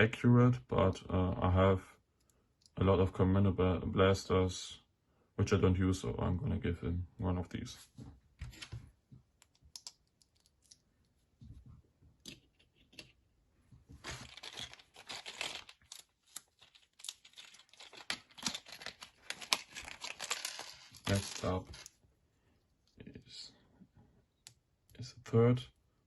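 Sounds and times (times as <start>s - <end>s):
small plastic parts clicking: 9.4s - 10.8s
plastic bag crinkling: 14.0s - 21.9s.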